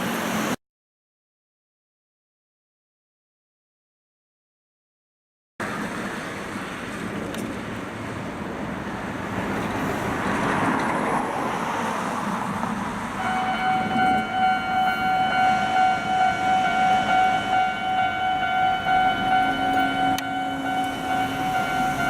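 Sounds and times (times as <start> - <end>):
level crossing warning bell: 13.2 - 22.0.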